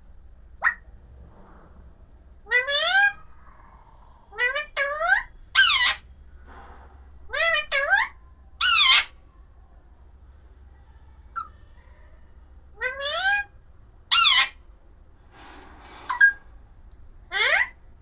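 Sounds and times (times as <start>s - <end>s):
parakeet shrill calls: 0.6s - 0.8s, 4.3s - 6.0s, 7.3s - 9.2s, 14.1s - 14.6s, 17.3s - 17.8s.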